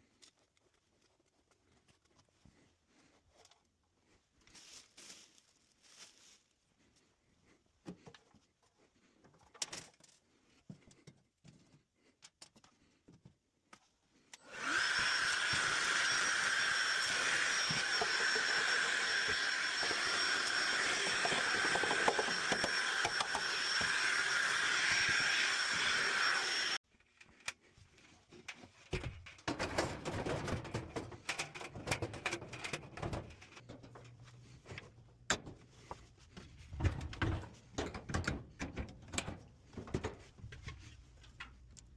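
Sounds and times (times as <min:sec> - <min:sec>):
electric motor whining: 0:14.4 - 0:26.8.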